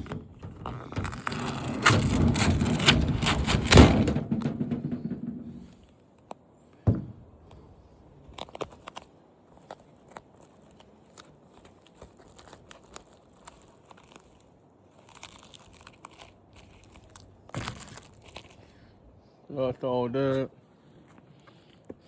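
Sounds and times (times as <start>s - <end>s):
heavy thud: 0.0s - 5.8s, 6.9s - 7.6s
plastic parts scraping and rattling: 0.0s - 5.9s.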